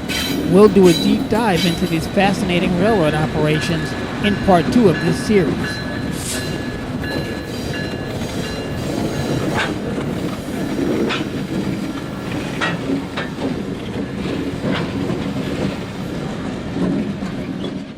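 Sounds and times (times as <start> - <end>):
wheels clicking over rail joints: 0.0 - 15.9
train rumbling past: 0.0 - 17.9.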